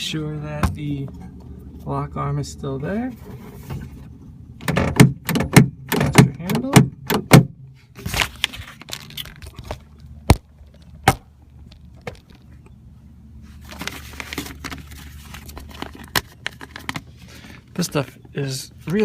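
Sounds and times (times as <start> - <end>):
rustling and scraping: 2.8 - 4.4, 7.7 - 12.7, 13.4 - 19.0
sharp clicks and knocks: 4.6 - 7.5.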